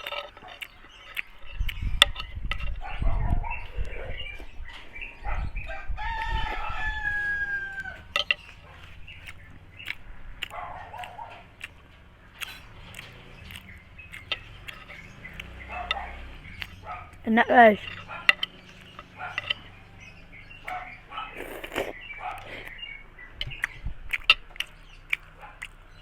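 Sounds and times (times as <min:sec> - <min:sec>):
person eating with smacks: 0:00.0 - 0:04.6, 0:08.0 - 0:19.8, 0:20.7 - 0:26.0
rooster crowing: 0:05.6 - 0:08.3.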